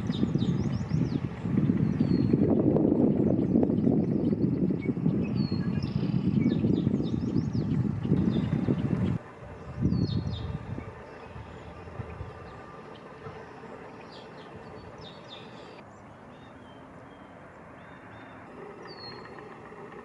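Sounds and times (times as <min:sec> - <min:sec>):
birds chirping: 0:00.0 - 0:20.0
outdoor background hiss: 0:08.0 - 0:20.0.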